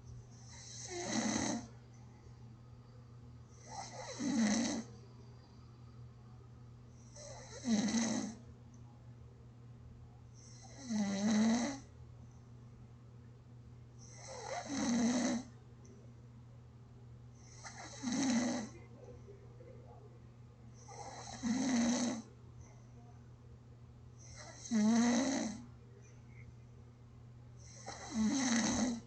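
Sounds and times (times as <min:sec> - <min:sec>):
faint low hum: 0:00.0 - 0:29.0
person snoring: 0:00.5 - 0:01.7, 0:03.6 - 0:04.9, 0:07.1 - 0:08.4, 0:10.4 - 0:11.8, 0:14.0 - 0:15.5, 0:17.5 - 0:18.8, 0:20.8 - 0:22.2, 0:24.3 - 0:25.6, 0:27.6 - 0:29.0.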